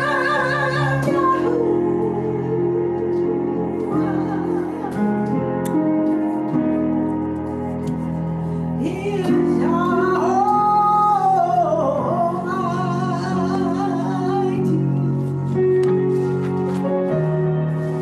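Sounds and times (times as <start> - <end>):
group singing worship song: 0.0 - 5.3
instrumental accompaniment: 0.0 - 18.0.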